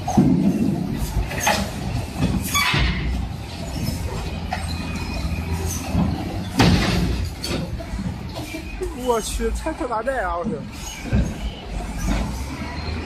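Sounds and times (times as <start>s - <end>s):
metal clanks: 0.0s - 9.4s
loader engines rumbling: 0.0s - 13.0s
scraping screech: 2.4s - 6.6s, 10.6s - 13.0s.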